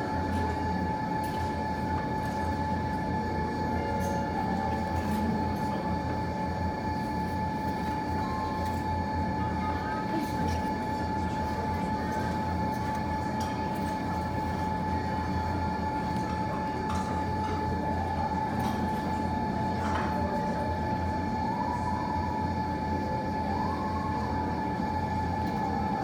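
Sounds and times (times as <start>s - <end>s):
ventilation rumble and whine: 0.0s - 26.0s.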